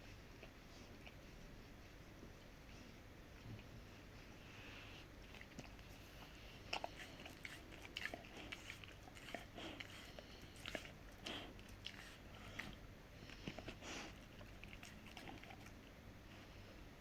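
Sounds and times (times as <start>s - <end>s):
dog gnawing a hoof chew: 5.2s - 16.0s.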